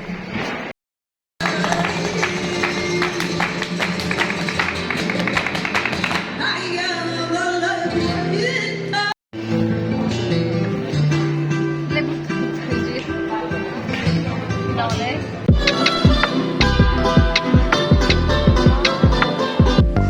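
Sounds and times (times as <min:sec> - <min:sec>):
rhythmic percussive strikes: 0:01.4 - 0:06.3, 0:15.5 - 0:20.0
flamenco guitar: 0:01.4 - 0:20.0
person singing: 0:15.5 - 0:20.0.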